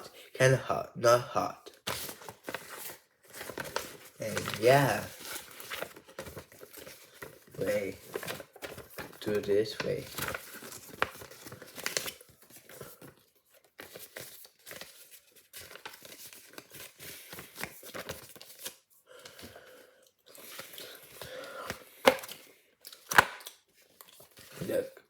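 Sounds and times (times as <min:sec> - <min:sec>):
chip packaging crinkling and tearing: 0:01.9 - 0:12.9.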